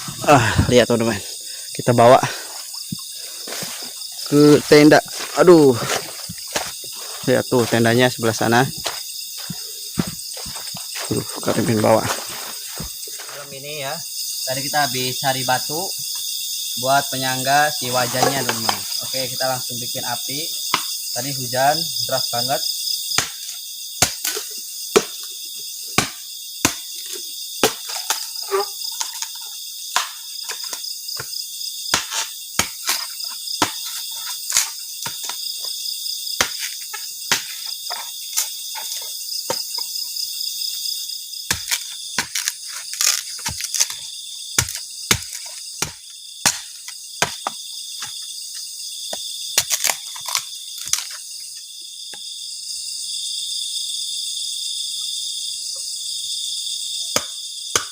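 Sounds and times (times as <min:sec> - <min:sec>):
crickets and insects chirping: 0:00.0 - 0:57.9.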